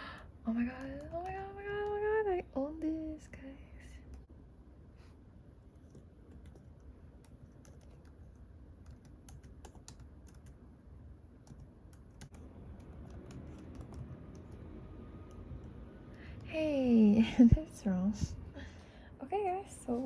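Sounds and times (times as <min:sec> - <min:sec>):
faint keyboard typing clicks: 0:00.0 - 0:02.2, 0:05.7 - 0:10.8, 0:11.4 - 0:14.7.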